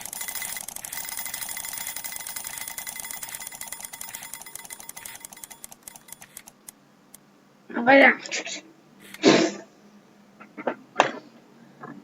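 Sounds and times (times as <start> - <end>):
alarm clock bell ringing: 0.0 - 6.5.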